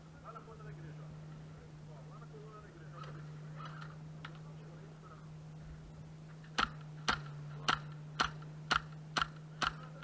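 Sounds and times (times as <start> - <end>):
airsoft gun shots: 6.5 - 10.0.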